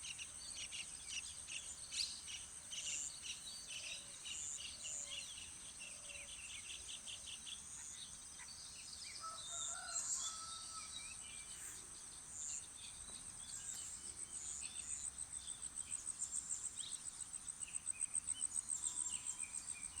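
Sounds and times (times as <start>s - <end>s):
distant rooster crowing: 9.2s - 11.0s.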